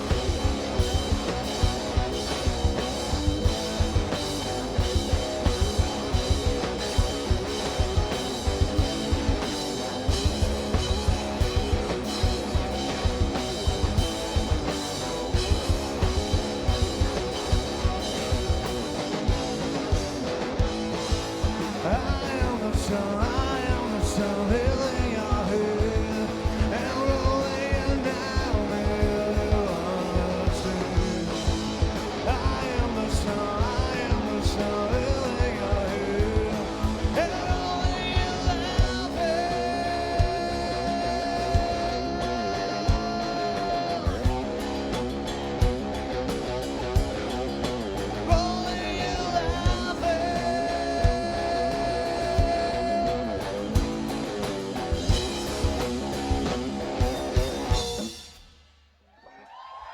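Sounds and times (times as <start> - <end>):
guitars playing: 0.0 - 58.2
steady drum beat: 0.0 - 58.8.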